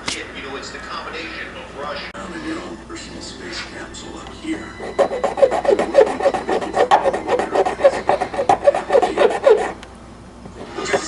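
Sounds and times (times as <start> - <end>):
file rasping on plastic: 4.8 - 9.8.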